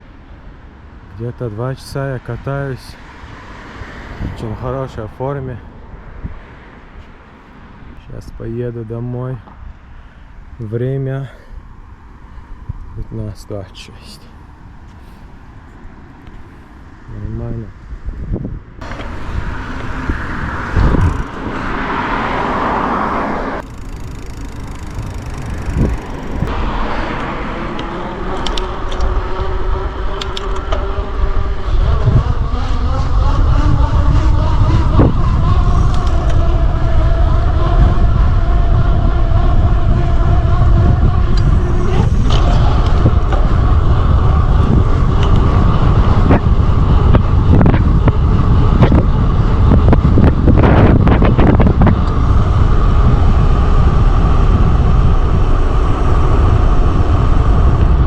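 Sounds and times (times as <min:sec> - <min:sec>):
heavy rumble: 0:00.0 - 0:58.0
steady hum: 0:00.0 - 0:58.0
wind buffeting microphone: 0:00.0 - 0:58.0.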